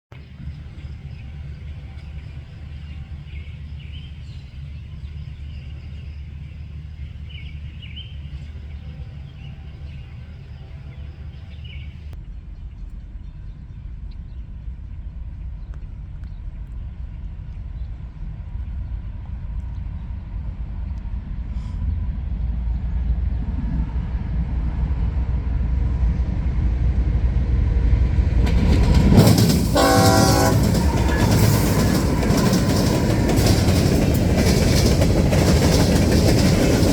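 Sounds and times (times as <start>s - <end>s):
diesel freight train rumble: 0.1s - 12.5s, 16.8s - 36.9s
locomotive air horn: 29.2s - 33.4s.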